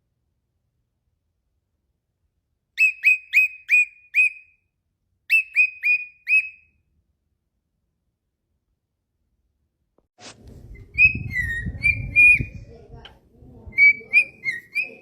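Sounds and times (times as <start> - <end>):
cockatiel whistled calls: 2.8 - 4.6, 5.3 - 6.8, 10.7 - 12.6, 13.8 - 15.0.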